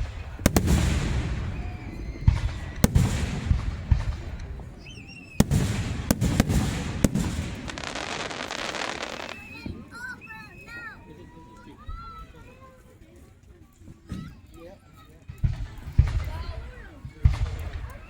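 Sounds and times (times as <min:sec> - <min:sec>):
fireworks bangs: 0:00.0 - 0:10.0
fireworks crackling hiss: 0:05.4 - 0:09.8.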